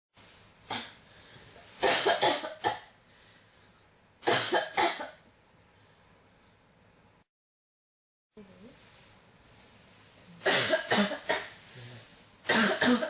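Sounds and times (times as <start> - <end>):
person coughing: 1.8 - 2.9, 4.3 - 5.2, 10.4 - 11.5, 12.5 - 13.0.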